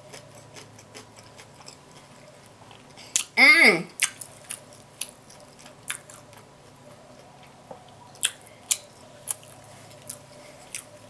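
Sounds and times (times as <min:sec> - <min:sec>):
open-mouth chewing: 0:04.0 - 0:11.0.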